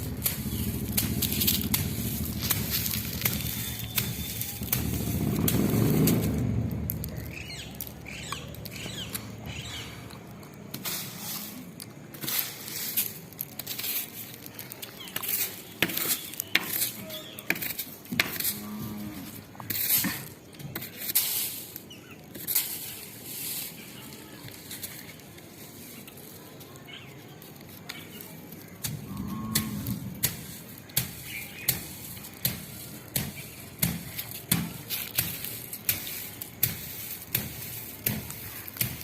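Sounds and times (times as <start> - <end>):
low rumble: 0.0 - 9.3.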